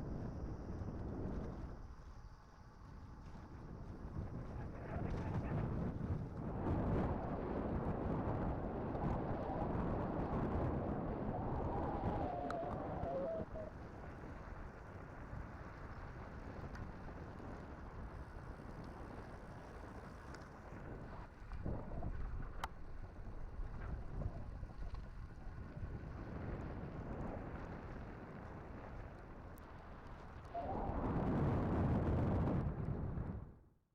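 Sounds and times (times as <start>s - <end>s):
wind buffeting microphone: 2.8s - 33.6s
faint clicks: 11.6s - 13.7s, 20.1s - 20.6s, 21.4s - 22.8s.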